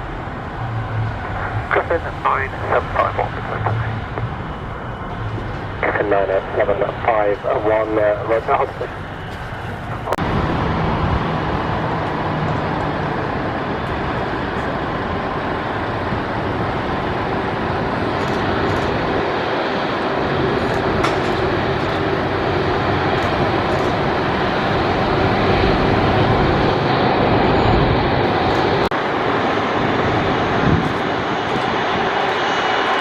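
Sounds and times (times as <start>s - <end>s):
faint hum: 0.0s - 10.2s
jet engines roaring: 0.0s - 33.0s.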